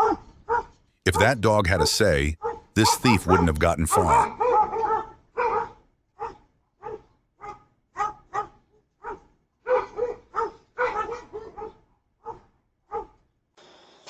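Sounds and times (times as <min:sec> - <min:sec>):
dog barking: 0:00.0 - 0:01.3, 0:02.4 - 0:02.6, 0:03.2 - 0:03.4, 0:04.2 - 0:13.2.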